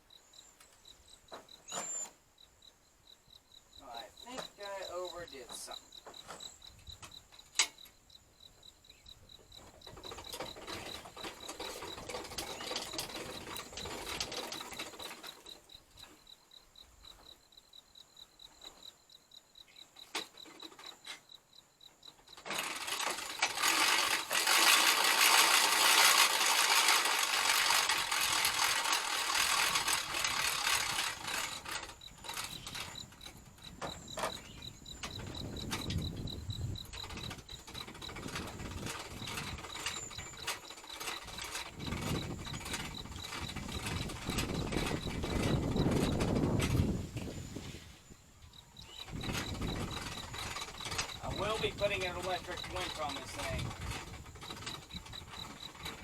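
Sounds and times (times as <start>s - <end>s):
crickets chirping: 0.0s - 56.0s
winch ratchet clicking: 9.9s - 15.6s, 22.3s - 47.0s, 48.8s - 56.0s.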